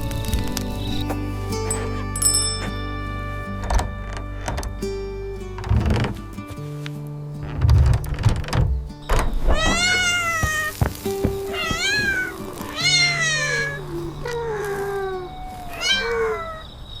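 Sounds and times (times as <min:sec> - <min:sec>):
soft background music: 0:00.0 - 0:16.3
kitten meowing: 0:09.5 - 0:10.8, 0:11.4 - 0:16.7.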